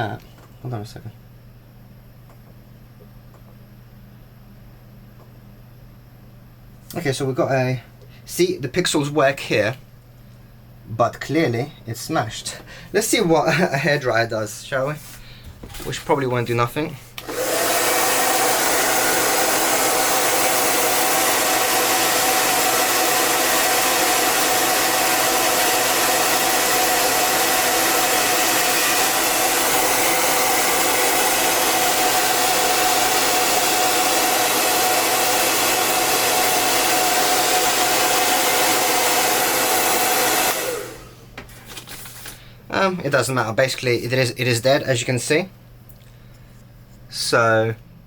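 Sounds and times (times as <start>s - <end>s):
hair dryer running: 17.2s - 41.4s.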